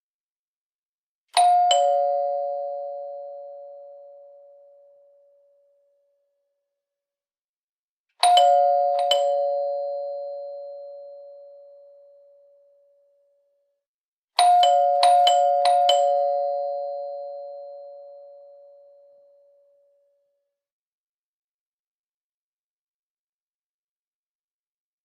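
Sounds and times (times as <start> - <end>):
two-tone doorbell chime: 1.4 - 5.9, 8.2 - 13.3, 14.4 - 20.2.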